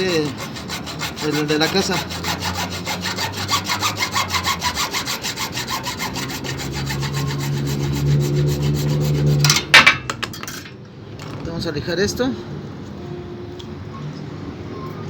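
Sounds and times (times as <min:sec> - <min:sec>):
hand saw cutting plastic pipe: 0:00.0 - 0:09.9.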